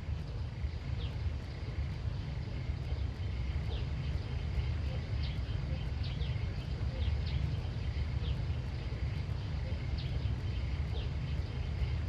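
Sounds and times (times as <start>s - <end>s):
small bird chirping: 0.0s - 12.0s
steady low rumble: 0.0s - 12.0s.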